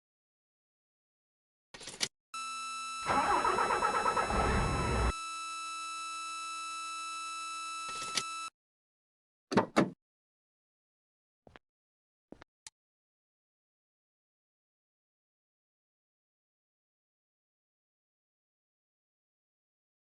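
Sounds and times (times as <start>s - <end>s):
steady electrical whine: 2.4s - 8.5s
diesel engine cranking: 3.1s - 5.1s.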